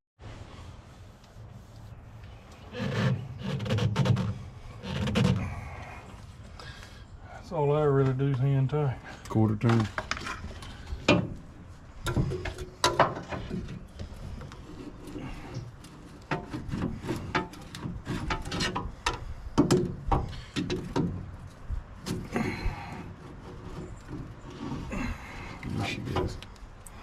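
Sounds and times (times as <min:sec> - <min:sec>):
hands and tools handling parts: 0:09.2 - 0:24.9.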